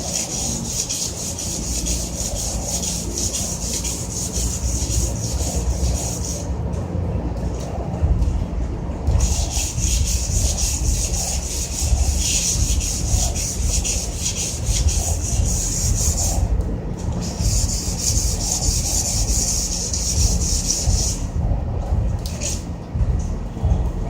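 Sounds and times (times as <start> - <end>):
rubbing on metal casing: 0.0 - 6.6, 9.1 - 16.5, 17.2 - 21.4.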